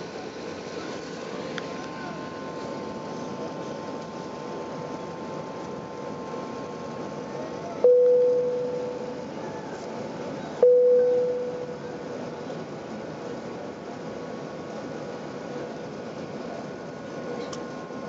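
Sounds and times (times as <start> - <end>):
aircraft cabin hum: 0.0 - 18.0
cabin chime bong: 10.6 - 11.8.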